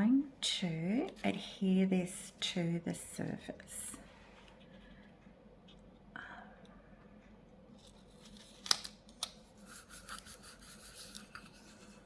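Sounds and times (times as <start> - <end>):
paper rubbing on hard surface: 9.6 - 12.0.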